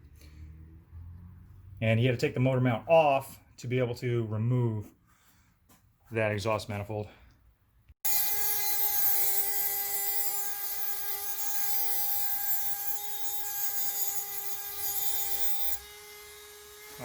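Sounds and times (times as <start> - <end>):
rotary tool grinding metal: 8.1 - 17.0.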